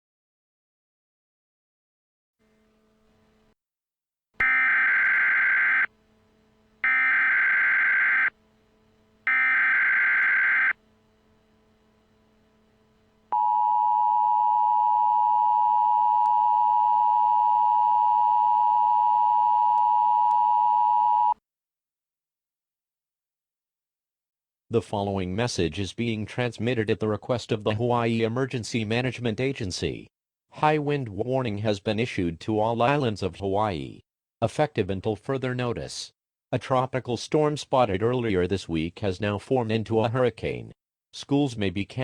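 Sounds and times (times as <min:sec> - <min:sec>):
screechy digital header bursts: 0:04.4 - 0:05.9, 0:06.8 - 0:08.3, 0:09.3 - 0:10.7
two-tone attention signal: 0:04.4 - 0:05.9, 0:06.8 - 0:08.3, 0:09.3 - 0:10.8.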